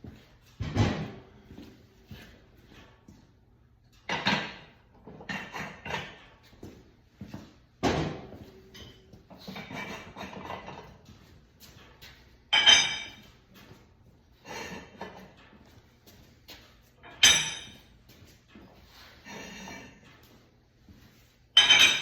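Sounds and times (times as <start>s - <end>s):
metal clanks and clatter: 3.9s - 6.8s, 7.8s - 14.0s, 14.7s - 20.5s, 21.5s - 22.0s
loud ringing metal knocks: 12.5s - 13.2s, 17.2s - 17.8s, 21.6s - 22.0s.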